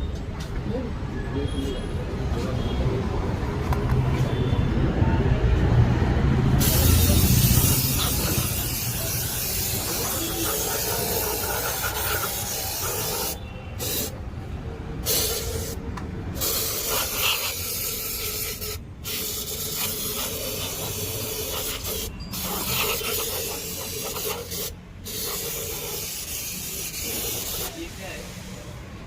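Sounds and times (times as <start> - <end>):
hissing spray bursts: 6.5 - 14.2, 15.0 - 28.9.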